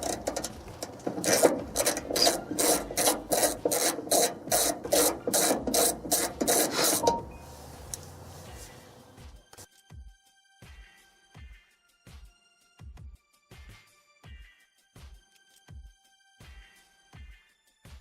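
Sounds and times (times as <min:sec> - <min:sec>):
ratchet wrench ratcheting: 0:00.0 - 0:07.3.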